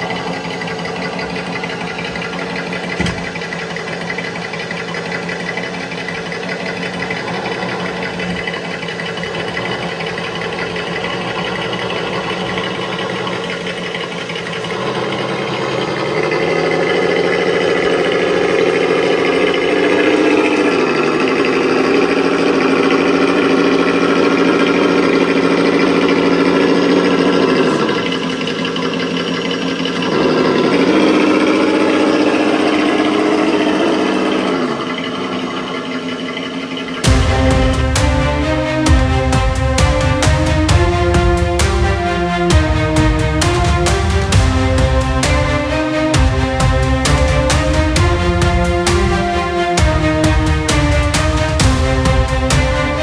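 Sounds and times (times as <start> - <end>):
simulated engine sound through speaker: 0.0 - 53.0.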